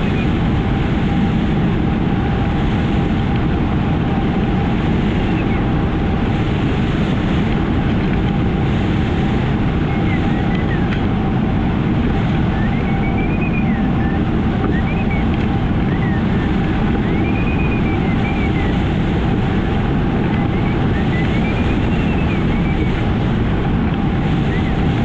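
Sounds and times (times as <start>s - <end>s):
wind rushing over microphone: 0.0s - 25.0s
faint whistling tone: 5.2s - 5.6s, 9.8s - 11.0s, 12.4s - 18.8s, 20.3s - 23.1s, 24.4s - 24.9s.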